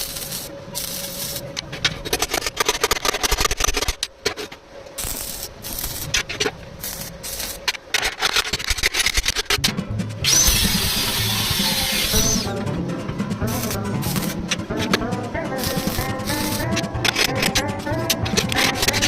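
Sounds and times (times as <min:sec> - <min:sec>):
scraping and crackling on metal: 0:00.0 - 0:09.8, 0:15.6 - 0:19.0
steady machine hum: 0:00.0 - 0:19.0.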